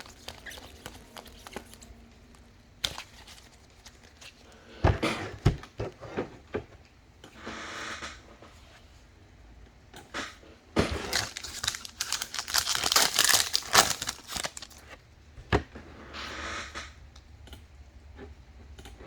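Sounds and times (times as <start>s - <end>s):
pack wrapper crinkling: 0.0s - 4.5s, 11.0s - 14.8s.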